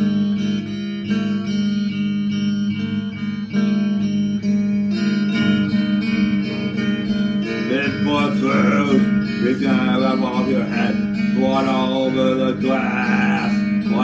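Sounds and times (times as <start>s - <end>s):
strummed guitar: 0.0s - 14.0s
person singing: 6.1s - 14.0s.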